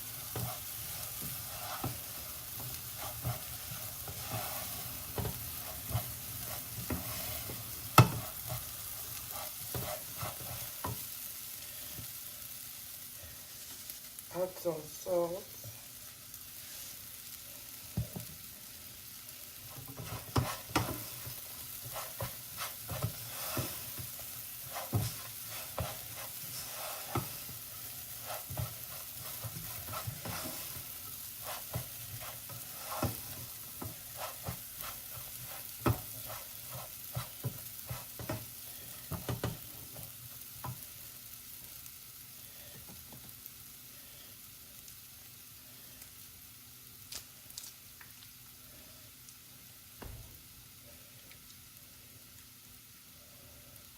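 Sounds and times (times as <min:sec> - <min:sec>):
rice sizzling in a pan: 0:00.0 - 0:53.9
utensil scraping a pan: 0:00.3 - 0:11.0, 0:19.9 - 0:38.4.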